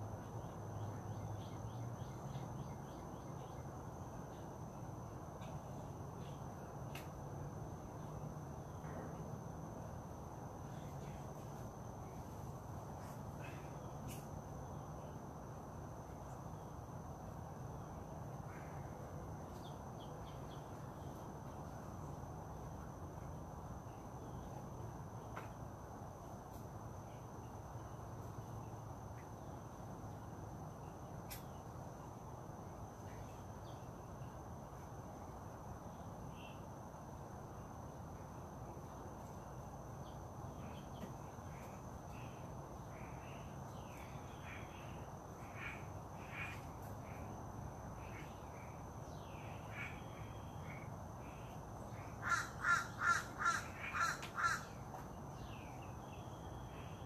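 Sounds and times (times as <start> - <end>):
high insect drone: 0.0 - 57.0
crow cawing: 52.2 - 54.8.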